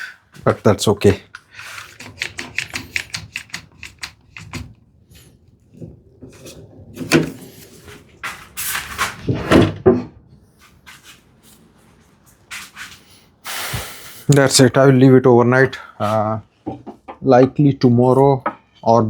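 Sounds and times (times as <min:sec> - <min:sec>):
clamp ratchet clicks: 0:01.4 - 0:04.7.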